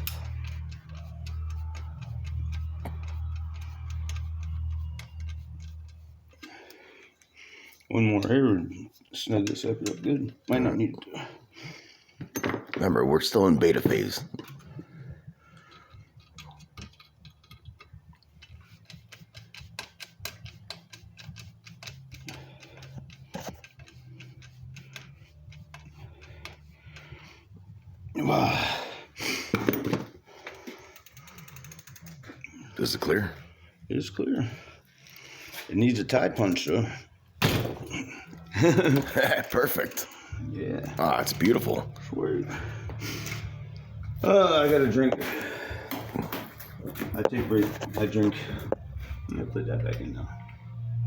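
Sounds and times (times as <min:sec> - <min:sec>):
hand tools clicking on metal: 0:00.0 - 0:07.4, 0:15.6 - 0:27.1
steady low hum: 0:30.2 - 0:51.0.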